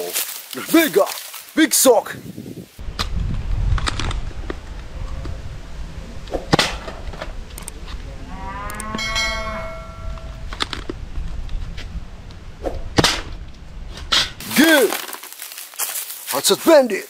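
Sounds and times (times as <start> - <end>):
low rumble: 2.8 - 14.4
sharp clicks: 7.5 - 7.8
cow mooing: 7.9 - 10.6.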